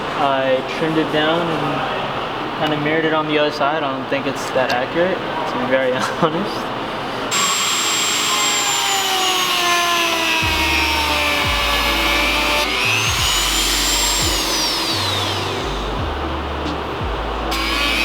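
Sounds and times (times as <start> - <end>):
background music with deep bass: 6.7 - 18.0
power tool cutting plastic: 7.3 - 16.0, 17.5 - 18.0.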